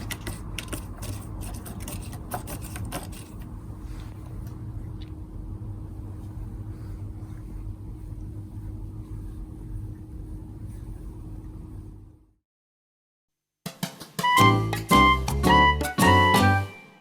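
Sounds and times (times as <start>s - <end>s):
steady low hum: 0.0s - 12.4s.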